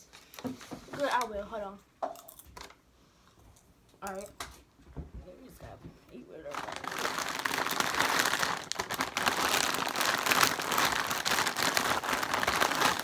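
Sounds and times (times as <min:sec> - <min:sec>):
plastic chip bags crinkling: 0:06.4 - 0:13.0.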